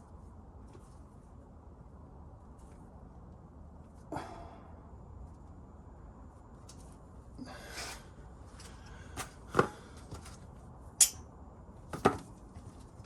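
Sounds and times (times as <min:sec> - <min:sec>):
low background hum: 0:00.0 - 0:13.0
tools clinking on metal: 0:11.0 - 0:11.2.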